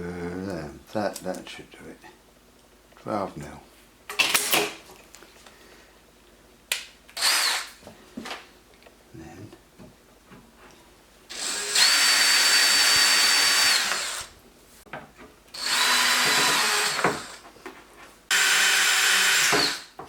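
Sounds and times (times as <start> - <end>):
power drill whining: 7.2 - 7.8, 11.3 - 14.3, 15.6 - 17.4, 18.3 - 19.9.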